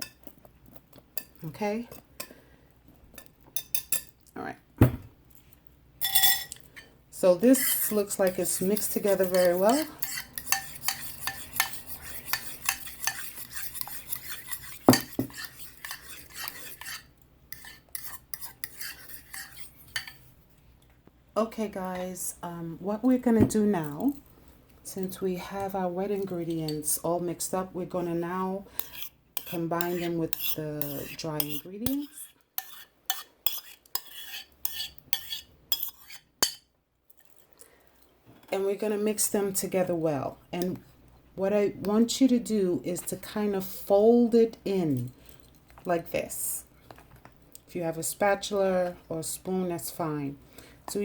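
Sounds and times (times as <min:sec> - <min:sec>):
utensil stirring in mixing bowl: 0:07.4 - 0:20.2, 0:27.9 - 0:36.6.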